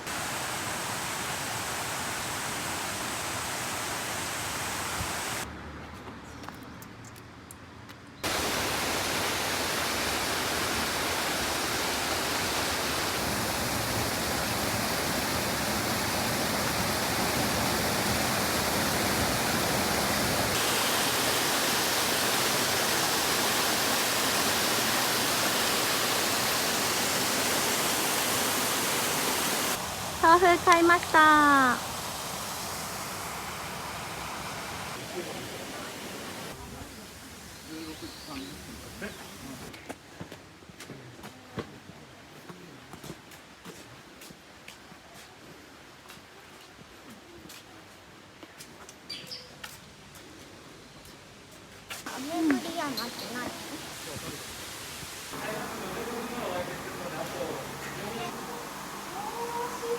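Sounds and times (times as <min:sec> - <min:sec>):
rushing mountain stream: 0:00.0 - 0:05.5, 0:08.2 - 0:39.6, 0:52.1 - 0:59.9.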